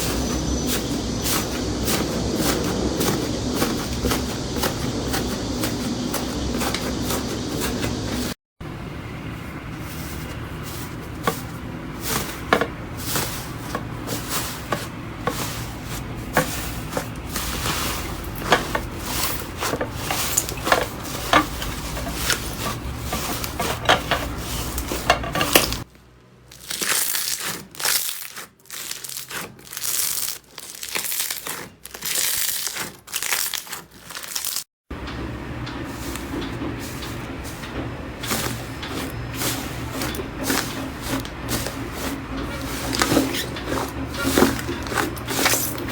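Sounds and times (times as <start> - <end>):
slime squishing and rustling: 0.0 - 8.4, 9.7 - 25.9, 26.5 - 34.7, 35.9 - 45.9
slime crackling and popping: 26.5 - 34.6.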